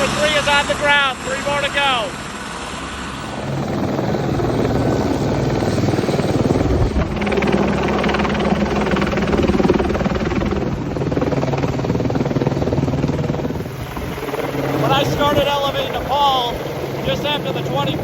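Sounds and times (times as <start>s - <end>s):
helicopter rotor chopping: 0.0s - 18.0s.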